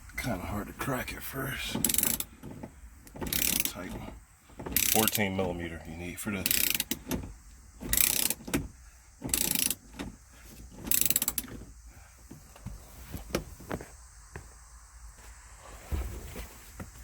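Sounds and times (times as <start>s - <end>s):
socket ratchet clicking: 1.8s - 2.4s, 3.0s - 3.8s, 4.6s - 5.3s, 6.4s - 10.1s, 10.8s - 11.6s.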